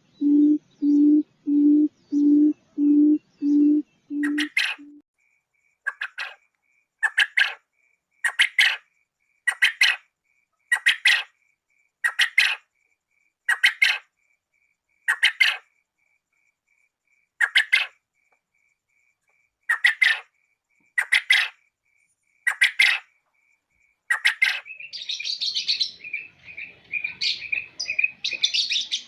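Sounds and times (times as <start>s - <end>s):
faint pulsing high beep: 0.0s - 5.0s
quail calling: 0.0s - 5.0s, 5.8s - 6.4s, 7.0s - 7.6s, 8.2s - 8.8s, 9.5s - 10.0s, 10.7s - 11.3s, 12.0s - 12.7s, 13.5s - 14.1s, 15.1s - 15.6s, 17.4s - 18.0s, 19.7s - 20.3s, 21.0s - 21.6s, 22.4s - 23.1s, 24.1s - 29.0s.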